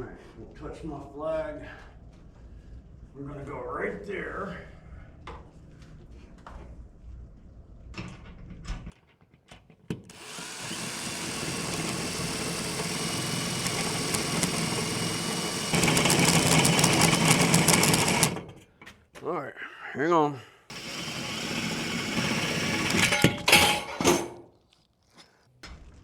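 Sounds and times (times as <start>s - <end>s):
electric drill running: 10.1s - 18.5s, 20.7s - 23.4s.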